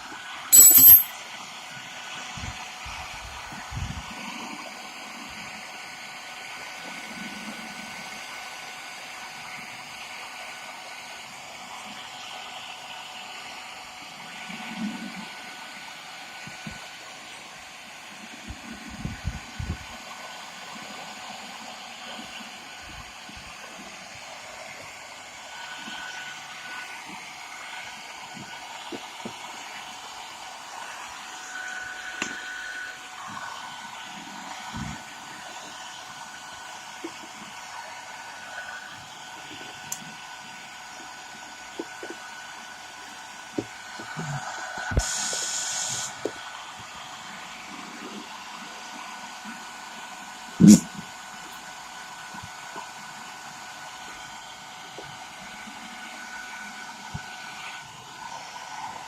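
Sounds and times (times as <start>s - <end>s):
hair dryer blowing: 22.7s - 50.8s, 51.5s - 59.0s
brief loud hiss: 44.9s - 46.2s.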